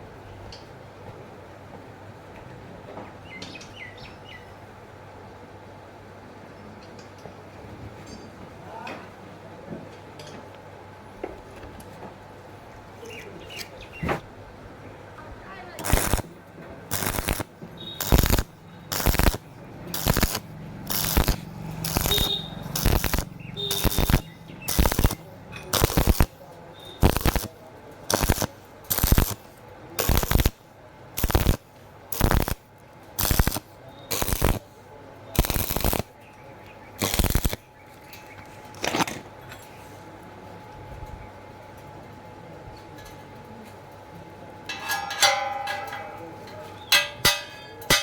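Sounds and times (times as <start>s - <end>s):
welding arc crackling: 15.8s - 36.2s, 37.0s - 37.7s.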